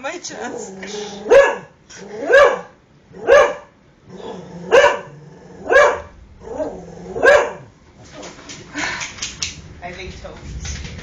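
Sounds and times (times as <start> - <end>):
dog barking: 1.3 - 3.8, 4.7 - 7.7.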